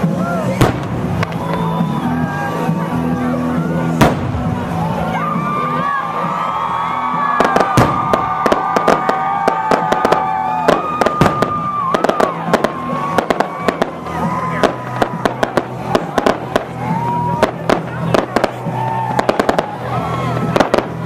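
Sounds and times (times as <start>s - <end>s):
firework bangs: 0.0s - 2.8s, 3.8s - 5.0s, 6.7s - 21.0s
crackling firework pops: 0.6s - 1.7s, 4.0s - 4.5s, 7.4s - 14.0s.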